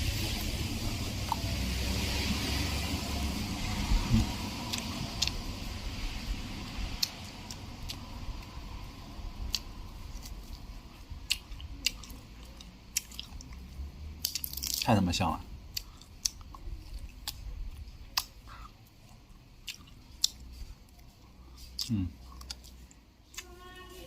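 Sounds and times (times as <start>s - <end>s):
wet chewing: 4.2s - 5.4s, 6.9s - 8.6s, 9.4s - 15.0s, 15.6s - 23.5s.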